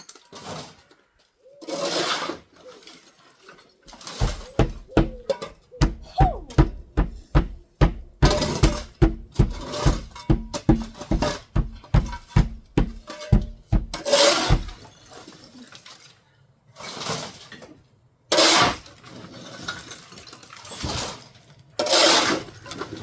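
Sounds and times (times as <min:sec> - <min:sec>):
sharp knocking: 0:04.2 - 0:14.0
scraping glass from window frame: 0:16.8 - 0:17.7, 0:18.3 - 0:23.0.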